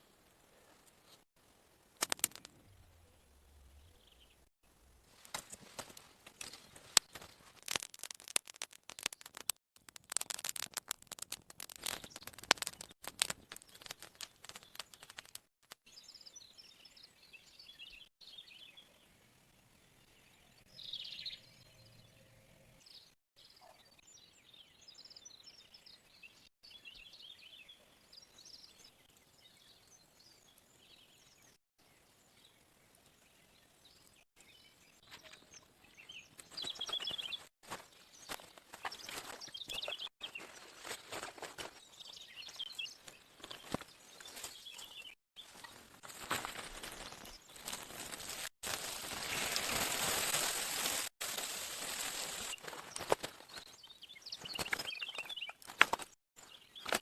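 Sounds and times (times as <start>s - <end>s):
sharp taps and clicks: 6.3s - 15.8s.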